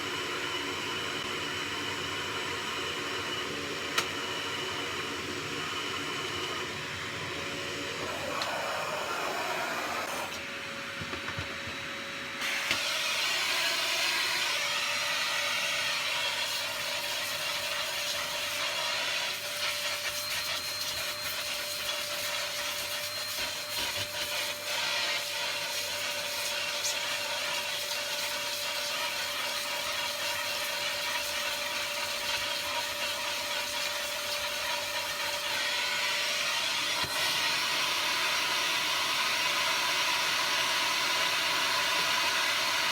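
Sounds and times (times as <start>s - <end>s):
vacuum cleaner running: 0.0s - 42.9s.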